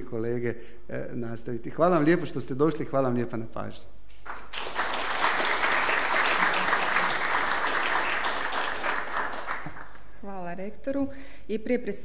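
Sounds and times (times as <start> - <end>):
audience applauding: 4.3 - 10.1.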